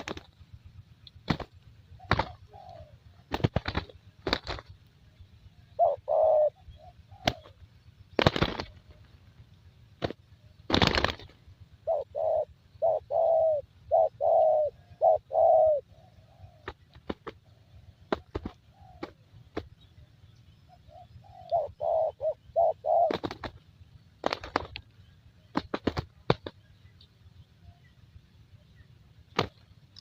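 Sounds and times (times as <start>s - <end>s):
noisy rustles: 0.0s - 5.6s, 7.2s - 11.8s
dove cooing: 1.3s - 9.3s, 10.0s - 19.7s, 20.7s - 23.6s.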